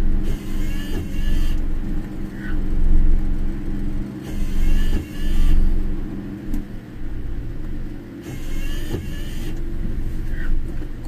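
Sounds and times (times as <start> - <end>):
engine and road hum: 0.0 - 11.0
short squeaky tones: 0.3 - 1.6, 4.3 - 5.7, 8.3 - 9.6.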